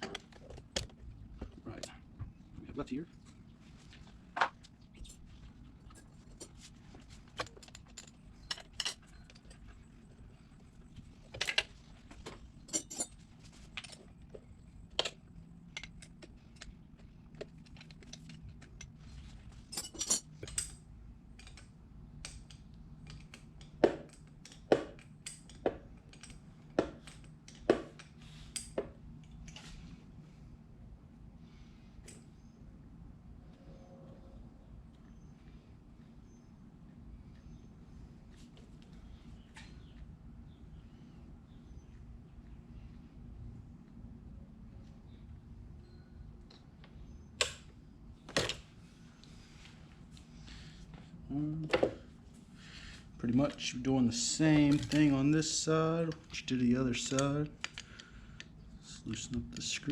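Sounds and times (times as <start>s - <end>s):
metal parts clicking and clinking: 7.3s - 9.9s, 12.5s - 14.1s, 19.6s - 20.8s.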